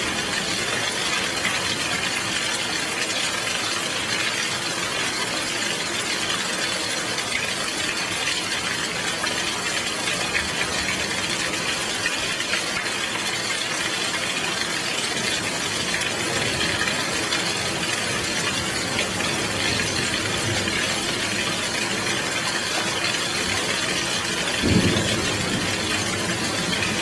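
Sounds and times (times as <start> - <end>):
heavy rain falling: 0.0 - 27.0.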